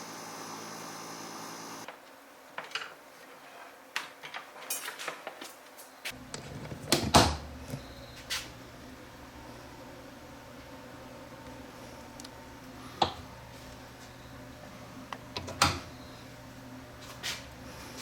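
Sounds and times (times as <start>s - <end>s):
steady hum: 6.1s - 18.0s.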